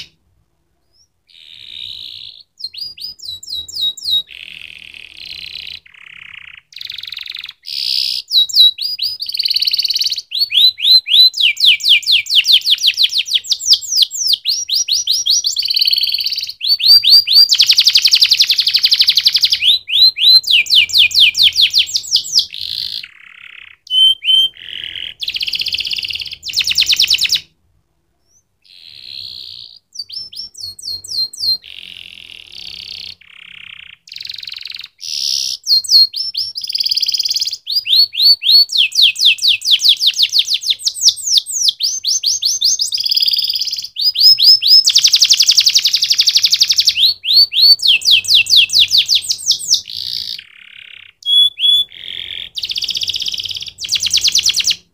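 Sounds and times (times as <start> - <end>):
canary singing trills: 0.0 - 0.2, 0.8 - 54.9.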